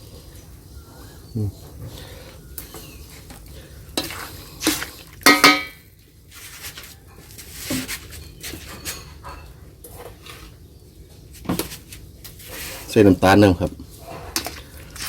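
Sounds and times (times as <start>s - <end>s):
utensil clanking against a pot: 4.0s - 5.9s.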